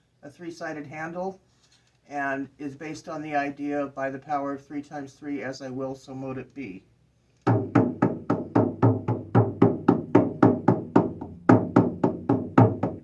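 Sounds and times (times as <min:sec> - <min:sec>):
frame drum beat: 0:07.5 - 0:13.0.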